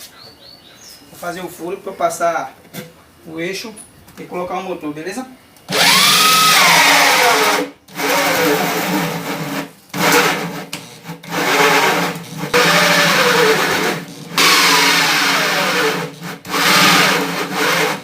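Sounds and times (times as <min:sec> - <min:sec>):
electric drill boring: 0:05.7 - 0:18.0.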